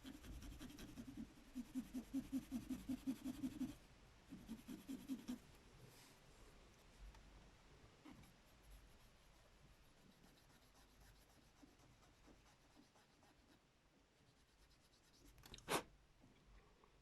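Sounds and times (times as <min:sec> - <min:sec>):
faint scratching: 0:00.0 - 0:07.1, 0:14.2 - 0:15.9.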